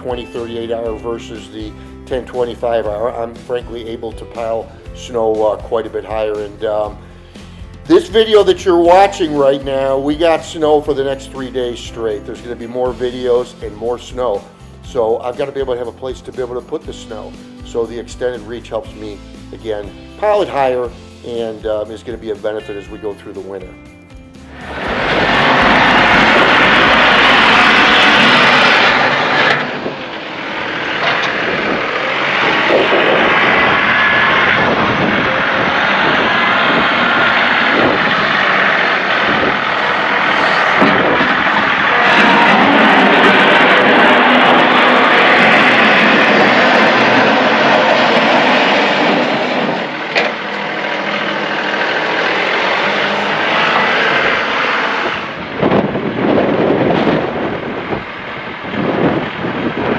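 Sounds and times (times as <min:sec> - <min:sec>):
tractor engine drone: 0:00.0 - 0:59.9
rushing noise of snow: 0:24.4 - 0:59.9.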